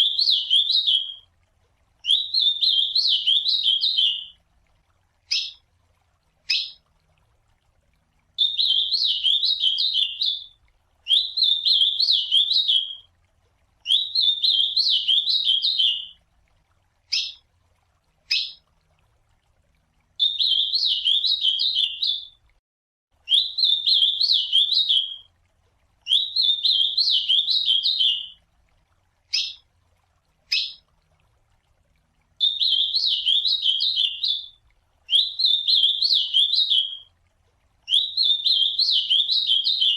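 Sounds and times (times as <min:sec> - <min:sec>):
bird singing warbled song: 0:00.0 - 0:01.2, 0:02.0 - 0:04.4, 0:05.3 - 0:05.6, 0:06.5 - 0:06.8, 0:08.4 - 0:13.0, 0:13.8 - 0:16.2, 0:17.1 - 0:17.4, 0:18.3 - 0:18.6, 0:20.2 - 0:22.4, 0:23.3 - 0:25.2, 0:26.1 - 0:28.4, 0:29.3 - 0:29.6, 0:30.5 - 0:30.9, 0:32.4 - 0:37.1, 0:37.9 - 0:39.9.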